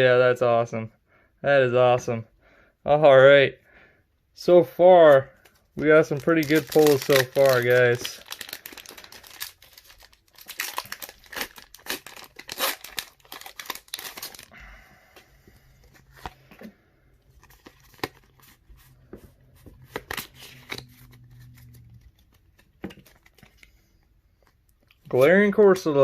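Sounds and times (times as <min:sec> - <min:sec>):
cards clicking and rustling: 0:05.4 - 0:14.4, 0:17.4 - 0:23.7
foil wrapper tearing and crinkling: 0:05.9 - 0:14.6.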